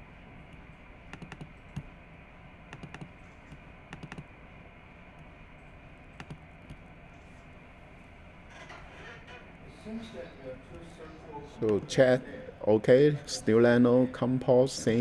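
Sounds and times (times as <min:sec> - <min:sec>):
faint background hum: 0:00.0 - 0:15.0
keyboard keys clicking: 0:00.5 - 0:01.9, 0:02.7 - 0:04.3, 0:06.2 - 0:06.8.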